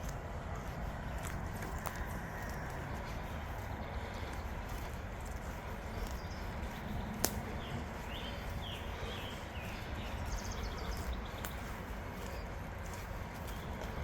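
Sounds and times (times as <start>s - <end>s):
bird chirps: 5.9s - 13.8s.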